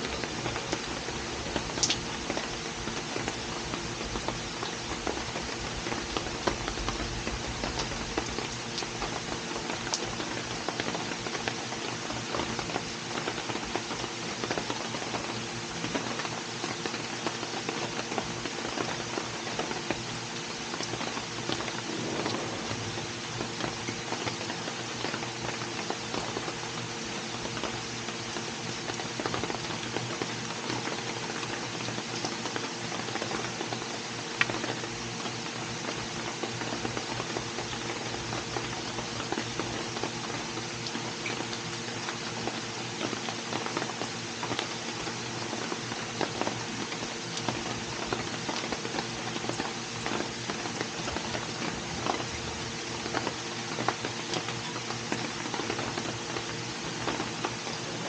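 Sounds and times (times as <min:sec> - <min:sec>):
rain pattering: 0:00.0 - 0:58.0
low hum: 0:21.5 - 0:25.2.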